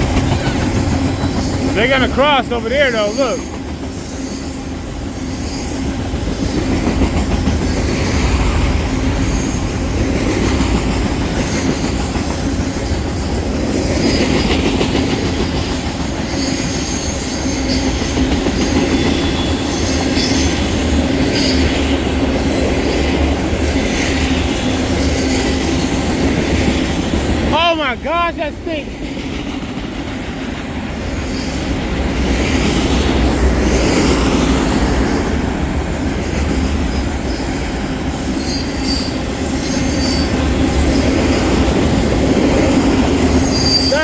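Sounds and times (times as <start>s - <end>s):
freight train wheels rumbling on rail: 0.0s - 44.0s
high-pitched wheel squeal: 43.4s - 44.0s.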